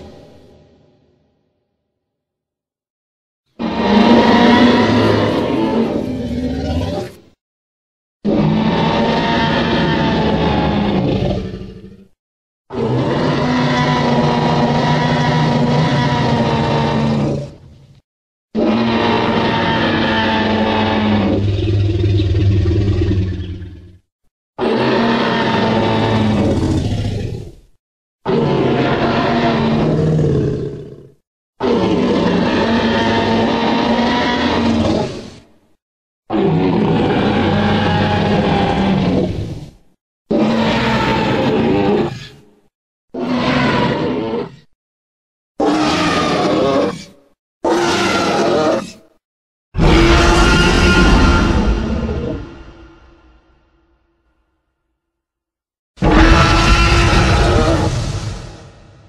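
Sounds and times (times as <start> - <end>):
deep creature roar: 3.6 - 7.2, 8.2 - 17.7, 18.6 - 35.5, 36.3 - 44.8, 45.6 - 49.2, 49.8 - 53.9, 56.0 - 59.0.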